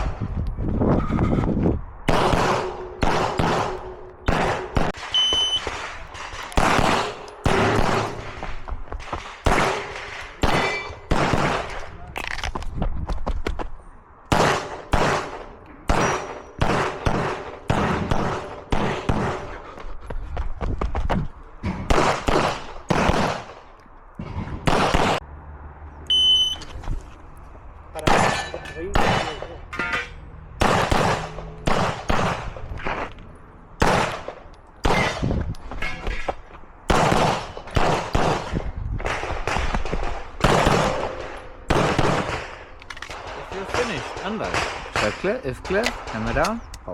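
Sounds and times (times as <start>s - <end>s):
pistol shots with echo: 2.1s - 8.4s, 9.3s - 11.9s, 14.3s - 19.6s, 21.9s - 23.6s, 24.6s - 25.2s, 28.0s - 29.5s, 30.6s - 33.0s, 33.8s - 35.2s, 36.9s - 46.6s.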